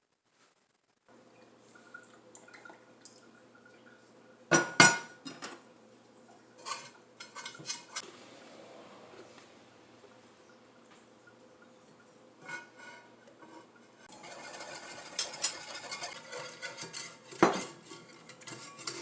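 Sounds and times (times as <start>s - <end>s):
faint steady hum: 0.0s - 19.0s
dishes and cutlery clattering: 4.5s - 5.6s, 6.6s - 8.0s, 12.4s - 19.0s.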